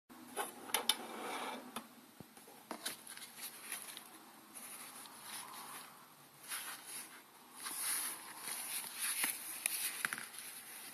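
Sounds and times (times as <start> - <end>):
packaging rustling and crinkling: 2.7 - 10.9.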